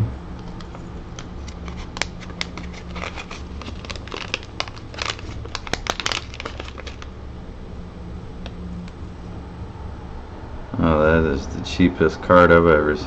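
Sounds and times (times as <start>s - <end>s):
plastic packaging crinkling: 0.4s - 7.1s.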